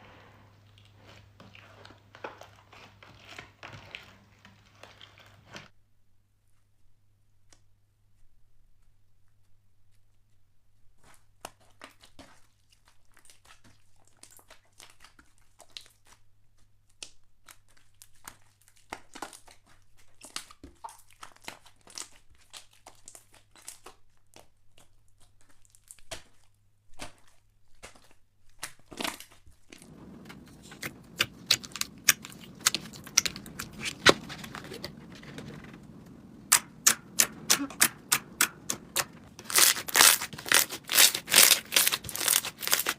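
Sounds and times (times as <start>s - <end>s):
slime crackling and popping: 27.9s - 42.9s
steady hiss: 29.8s - 39.8s.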